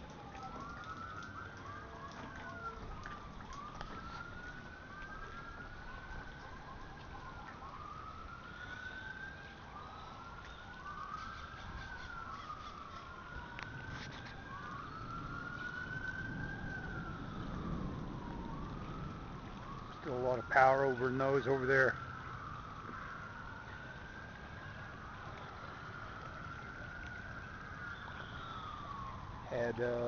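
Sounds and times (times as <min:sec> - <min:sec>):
emergency sirens wailing: 0:00.0 - 0:30.0
wind and rain hiss: 0:00.0 - 0:30.0.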